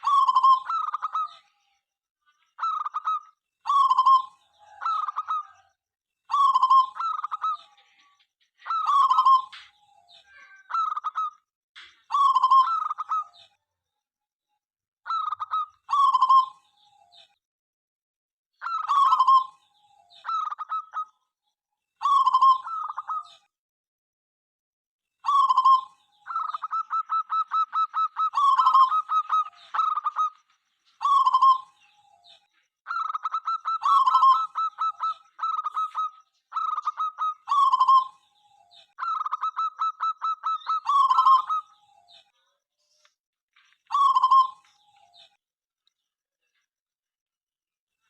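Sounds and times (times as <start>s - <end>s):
dove cooing: 0.0s - 1.4s, 2.6s - 5.7s, 12.1s - 13.4s, 15.1s - 16.6s, 18.6s - 19.6s, 20.2s - 21.1s, 25.2s - 30.4s, 31.0s - 31.9s, 32.9s - 38.2s, 39.0s - 41.8s, 43.9s - 44.7s.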